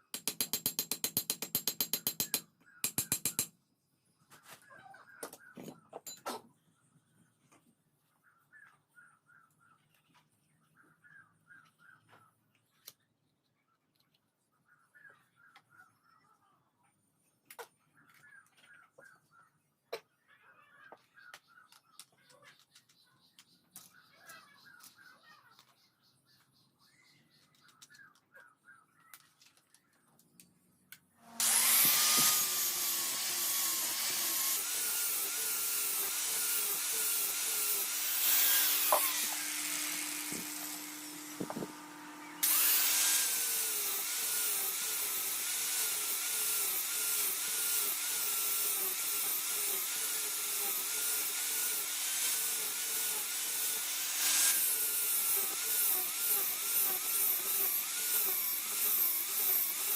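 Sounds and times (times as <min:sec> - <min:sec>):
electric grinder grinding steel: 0:31.2 - 0:59.9.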